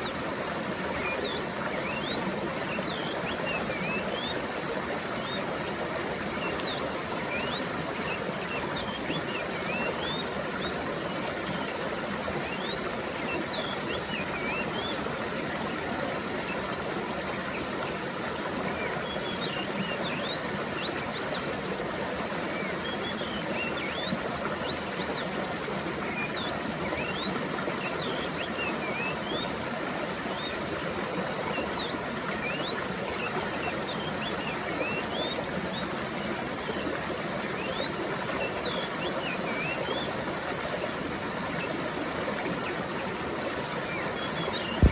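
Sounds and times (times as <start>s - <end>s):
stream of running water: 0.0s - 44.9s
small birds chirping: 43.3s - 44.9s.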